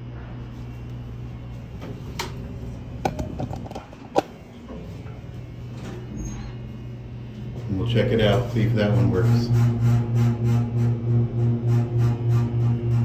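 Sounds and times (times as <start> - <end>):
elevator low hum: 0.0 - 13.0
sharp clicks and knocks: 3.0 - 5.2.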